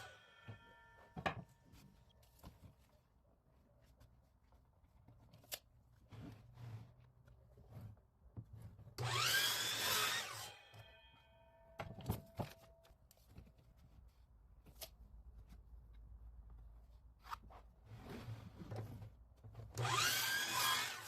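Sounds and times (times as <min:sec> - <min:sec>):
power saw cutting wood: 0:09.0 - 0:10.9, 0:19.8 - 0:21.0.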